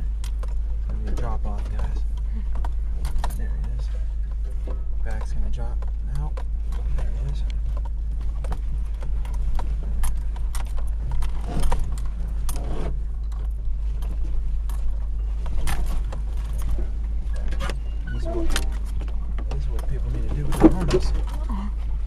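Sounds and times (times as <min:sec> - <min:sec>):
body clicks and rattles: 0:00.0 - 0:22.0
low engine and road rumble: 0:00.0 - 0:22.0.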